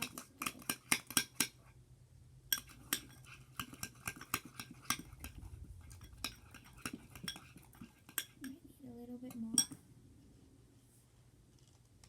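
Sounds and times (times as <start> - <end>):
utensil clicking against bowl: 0.0 - 1.6.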